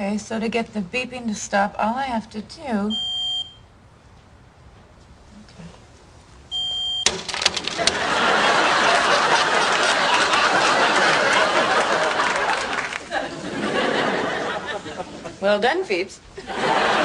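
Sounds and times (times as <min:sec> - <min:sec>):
smoke detector beeps: 0:02.9 - 0:03.7, 0:06.5 - 0:07.1
studio audience laughter: 0:07.8 - 0:15.4, 0:16.4 - 0:17.0.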